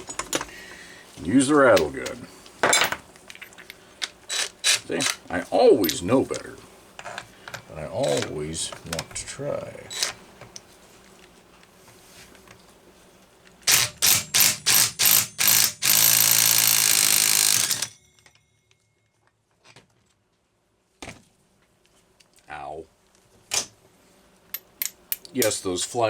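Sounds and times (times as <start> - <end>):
impact wrench hammering: 13.7 - 17.9.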